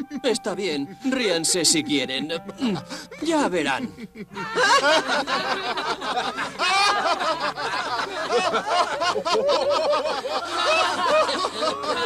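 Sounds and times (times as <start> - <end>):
people laughing together: 2.9 - 12.0.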